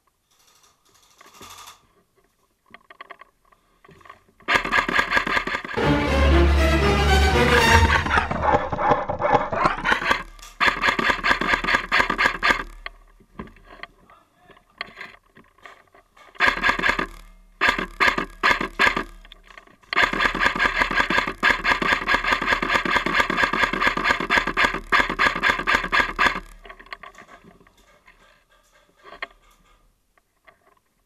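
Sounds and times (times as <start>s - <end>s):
airsoft gun firing: 16.4s - 19.1s, 20.0s - 26.6s.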